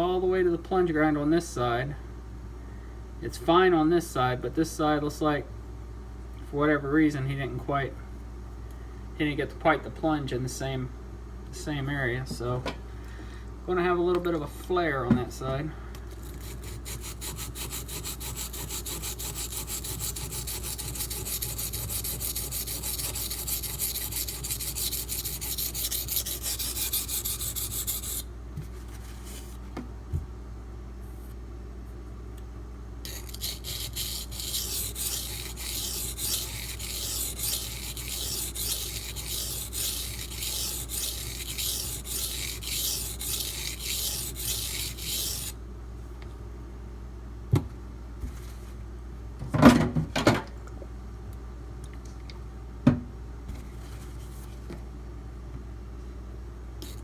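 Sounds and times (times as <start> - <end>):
knife scraping on sharpening stone: 16.2 - 28.2, 33.1 - 45.5.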